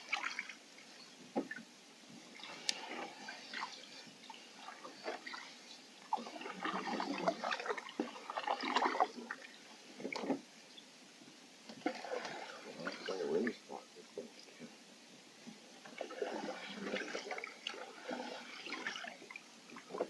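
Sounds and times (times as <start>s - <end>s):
canoe paddle splashing in water: 2.3s - 10.5s, 11.7s - 13.6s, 15.9s - 20.0s.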